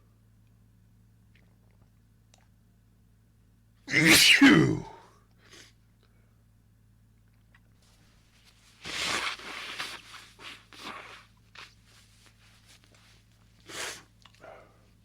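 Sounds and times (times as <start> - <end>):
man sneezing: 3.9 - 5.1.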